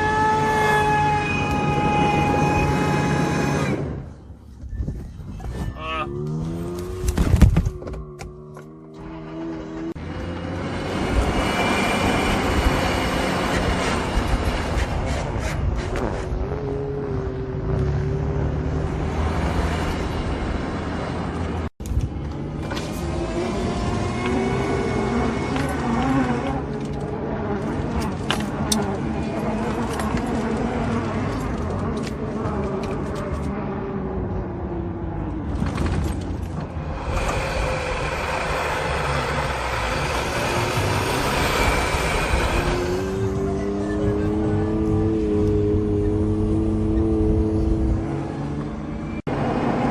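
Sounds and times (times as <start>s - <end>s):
off-road vehicle rumble: 0.0s - 49.9s
wind noise: 1.4s - 7.9s.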